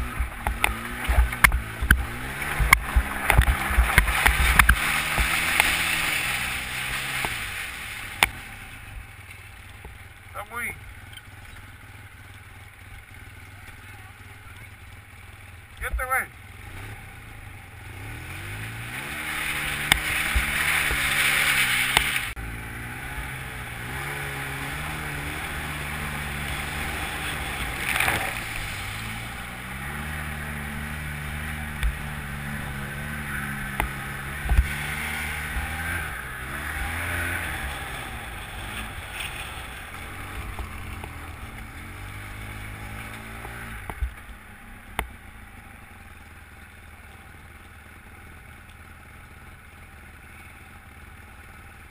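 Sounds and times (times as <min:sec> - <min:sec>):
atv engine running: 0:00.0 - 0:51.9
loud rushing noise: 0:02.1 - 0:08.2.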